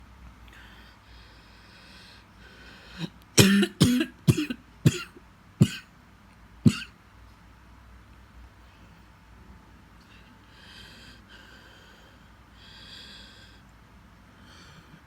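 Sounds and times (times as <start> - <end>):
person coughing: 3.0 - 5.9, 6.7 - 6.9.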